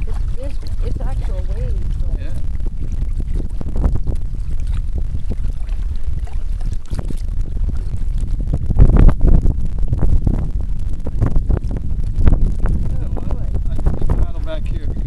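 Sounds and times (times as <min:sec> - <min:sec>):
small waves splashing on kayak: 0:00.0 - 0:02.2, 0:04.5 - 0:07.9
wind buffeting microphone: 0:00.0 - 0:15.0.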